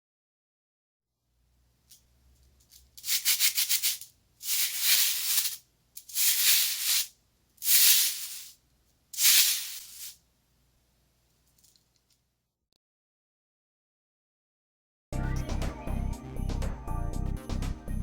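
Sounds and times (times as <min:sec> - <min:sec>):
hissing rattling crackle: 0:09.2 - 0:10.2.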